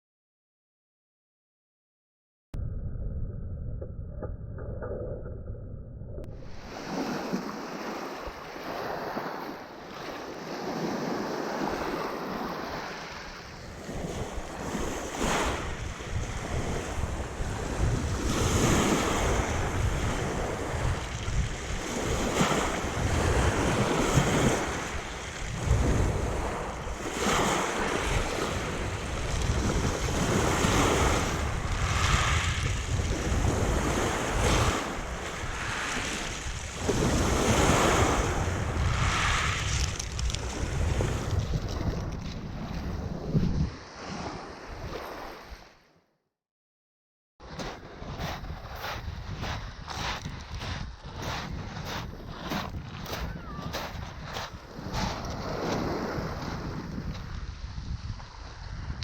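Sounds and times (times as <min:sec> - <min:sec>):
sea waves breaking on shore: 0:06.4 - 0:45.8, 0:51.2 - 0:57.4
wind buffeting microphone: 0:10.7 - 0:45.0, 0:47.6 - 0:59.0.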